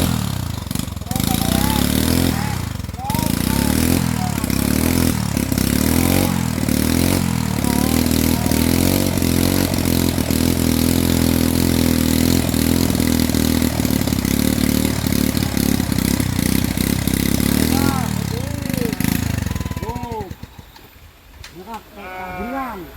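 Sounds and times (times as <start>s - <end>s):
chainsaw engine running: 0.0s - 21.8s.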